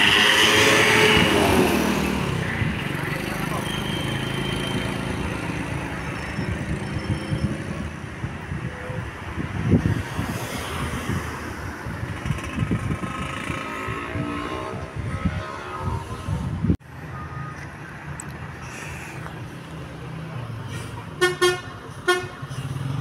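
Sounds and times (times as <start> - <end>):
road traffic going by: 0.0 - 23.0
wind buffeting microphone: 5.2 - 16.8.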